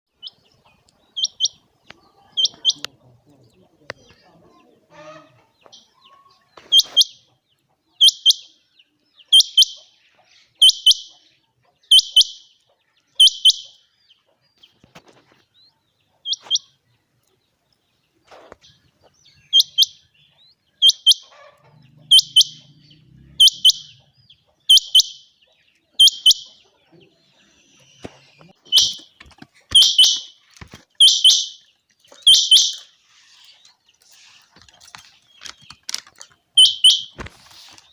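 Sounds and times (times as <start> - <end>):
quail calling: 1.2 - 1.6, 6.0 - 7.3, 9.3 - 9.9, 10.6 - 11.2, 11.8 - 12.5, 19.4 - 26.7, 27.5 - 29.1, 29.7 - 30.4, 31.0 - 31.6, 32.2 - 33.4, 36.6 - 37.7.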